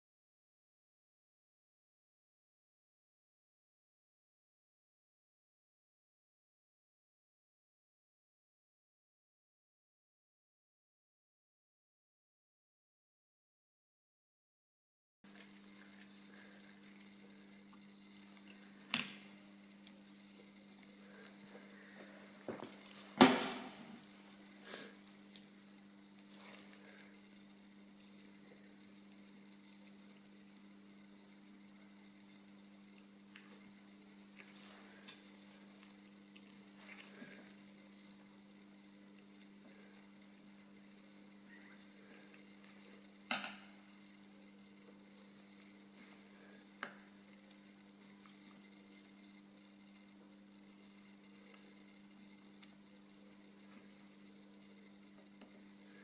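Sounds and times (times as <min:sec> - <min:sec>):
steady low hum: 0:15.2 - 0:56.0.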